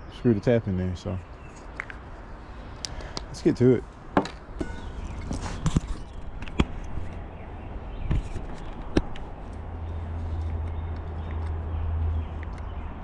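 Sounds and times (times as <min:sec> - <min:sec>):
low steady hum: 0:04.5 - 0:11.1.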